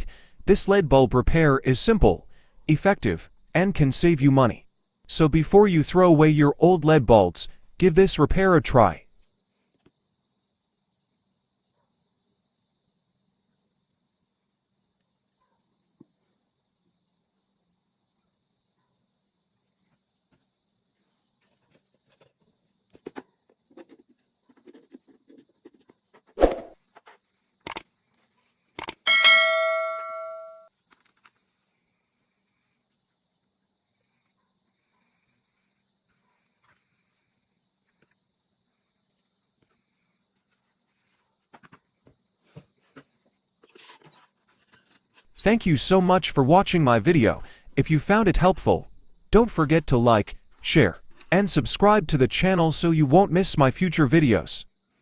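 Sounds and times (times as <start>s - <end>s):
insect trill: 8.9s - 46.6s
bell-like ding: 29.1s - 30.7s.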